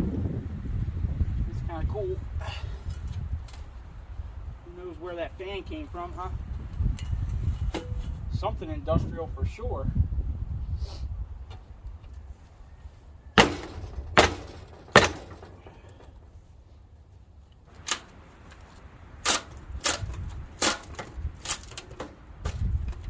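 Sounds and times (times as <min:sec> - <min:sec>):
metallic impacts on metal parts: 0:13.4 - 0:16.4.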